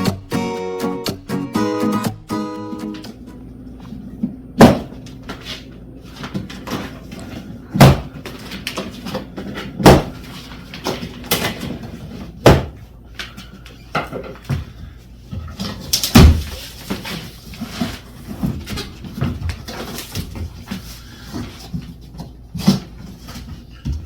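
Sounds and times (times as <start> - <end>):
cardboard box thumps: 4.6 - 5.0, 9.8 - 10.2.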